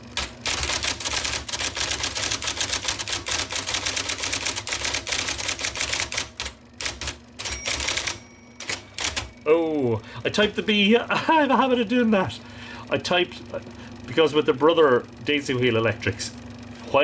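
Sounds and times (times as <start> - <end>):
typewriter keys clattering: 0.0 - 9.3
typewriter motor whirring: 0.0 - 9.4.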